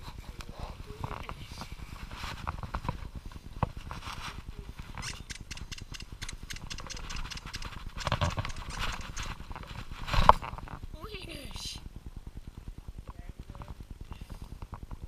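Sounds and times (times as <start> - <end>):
dogs scuffling: 0.0 - 10.8
dog paws pattering: 0.1 - 10.9.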